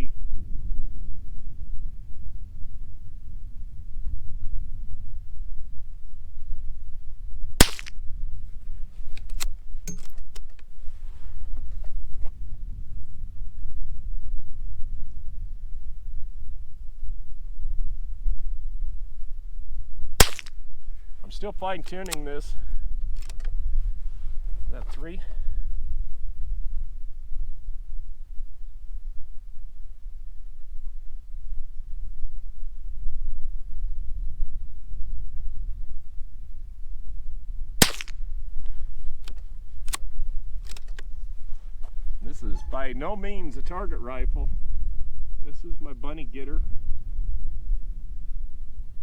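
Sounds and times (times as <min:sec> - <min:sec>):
wind buffeting microphone: 0:00.0 - 0:49.0
rifle bolt clicks: 0:07.6 - 0:07.9, 0:20.2 - 0:20.5, 0:21.8 - 0:22.3, 0:23.2 - 0:23.5, 0:37.8 - 0:38.1, 0:40.6 - 0:41.1
rifle shot: 0:07.6 - 0:08.1, 0:20.2 - 0:20.6, 0:37.8 - 0:38.2.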